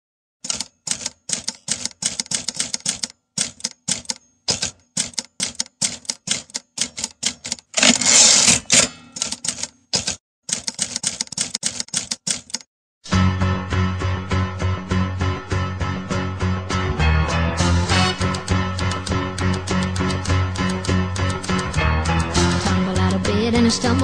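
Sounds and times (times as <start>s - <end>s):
typewriter keys striking: 0.4s - 12.7s, 18.2s - 23.3s.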